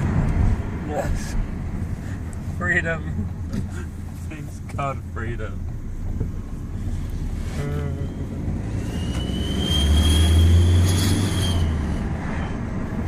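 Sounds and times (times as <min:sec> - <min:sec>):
car engine drone: 0:00.0 - 0:13.0
exhaust whistle rising in pitch: 0:07.8 - 0:12.6.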